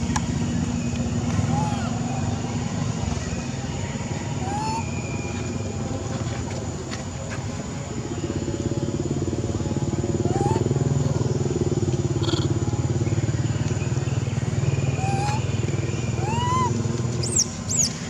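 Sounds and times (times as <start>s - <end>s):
motor engine running: 0.0s - 18.0s
rising and falling calls: 4.4s - 5.1s, 14.9s - 18.0s.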